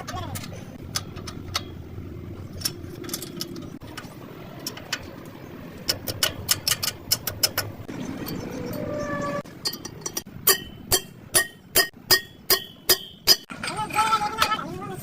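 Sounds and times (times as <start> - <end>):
sharp metallic clicks: 0.0 - 8.5.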